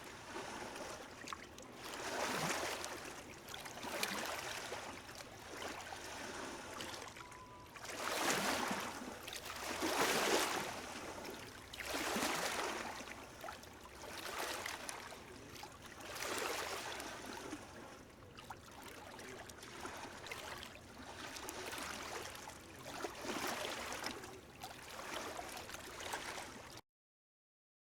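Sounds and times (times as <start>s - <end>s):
small waves lapping at shore: 0.0s - 26.8s.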